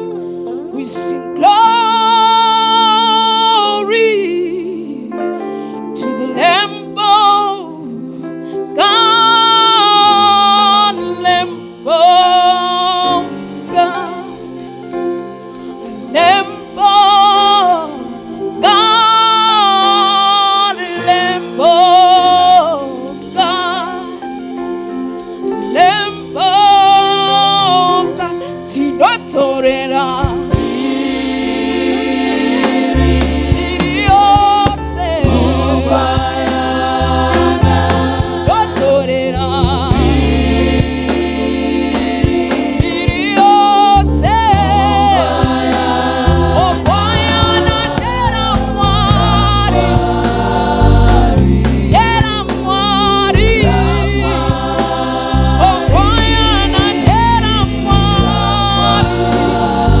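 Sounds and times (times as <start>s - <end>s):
choir singing with band: 8.7s - 60.0s
sustained bass notes: 29.8s - 60.0s.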